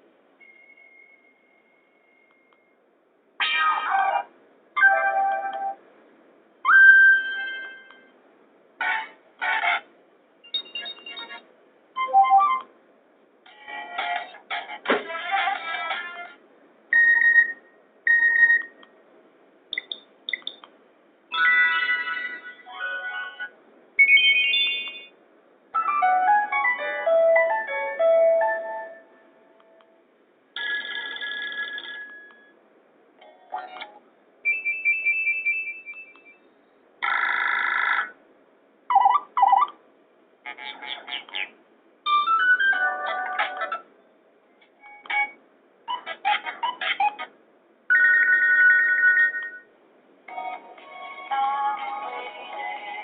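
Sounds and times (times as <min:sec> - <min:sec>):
phone ringtone melody: 0:21.3 - 0:22.6, 0:24.0 - 0:25.1, 0:25.8 - 0:29.0, 0:47.9 - 0:49.6
phone ringtone snippets: 0:24.0 - 0:25.1, 0:47.9 - 0:49.7.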